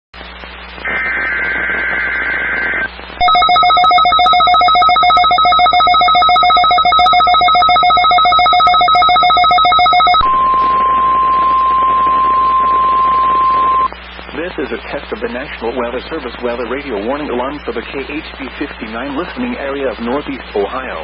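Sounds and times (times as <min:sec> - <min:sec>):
digital data tones: 0:01.2 - 0:13.9
pulsing electronic alert beep: 0:03.2 - 0:13.9
steady alarm tone: 0:03.2 - 0:13.9.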